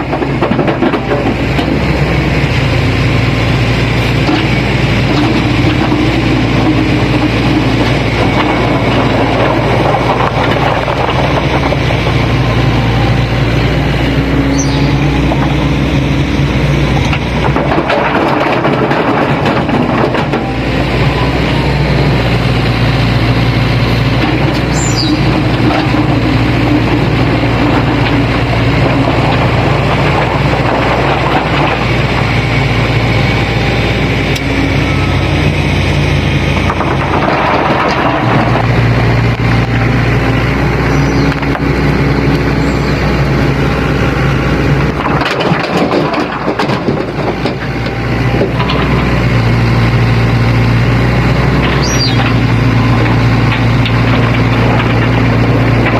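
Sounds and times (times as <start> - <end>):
diesel excavator engine running: 0.0 - 55.9
clatter and scraping of rock: 4.2 - 12.0, 17.0 - 20.5, 24.2 - 32.3, 36.6 - 39.4, 44.9 - 49.0, 51.6 - 55.9.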